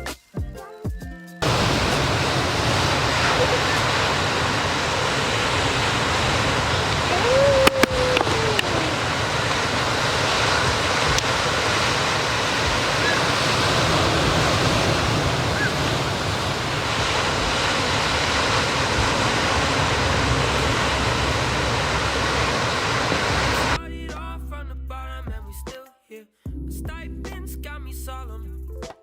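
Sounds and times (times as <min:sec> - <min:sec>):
ocean surf breaking: 0:01.4 - 0:23.8.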